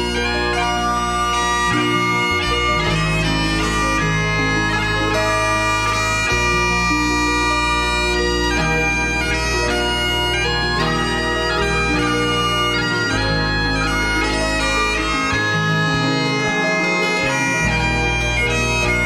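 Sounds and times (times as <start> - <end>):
bagpipe drones: 0.0 - 19.0
bagpipe melody: 0.0 - 19.0.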